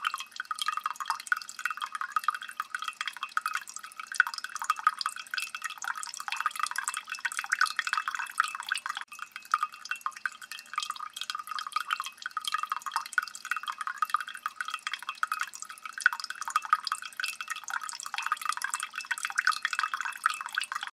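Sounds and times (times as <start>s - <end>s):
water dripping fast: 0.0s - 20.9s.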